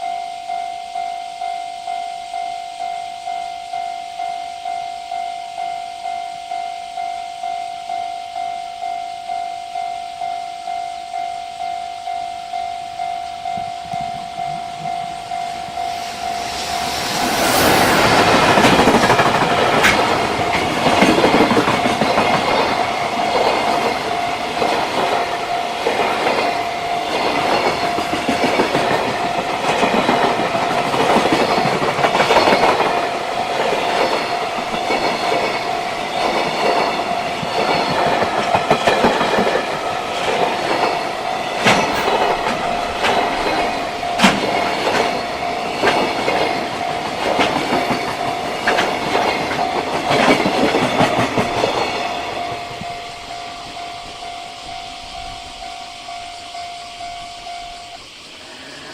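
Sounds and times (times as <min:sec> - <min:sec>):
crossing warning bell tone: 0:00.0 - 0:58.9
train wheels clattering on rails: 0:13.0 - 0:58.0.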